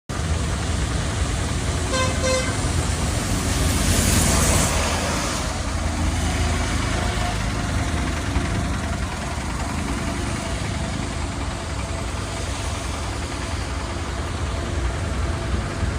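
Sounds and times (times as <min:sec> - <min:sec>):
diesel engine running: 0:00.1 - 0:15.9
loud rushing noise: 0:00.1 - 0:15.9
horn toots: 0:01.8 - 0:02.8.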